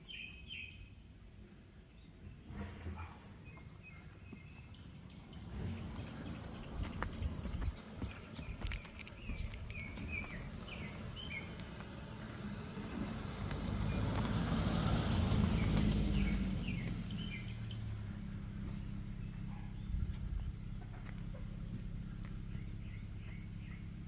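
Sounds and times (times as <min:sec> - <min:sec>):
small birds chirping: 0:00.0 - 0:01.0, 0:01.7 - 0:24.0
vehicle passing: 0:04.8 - 0:24.0.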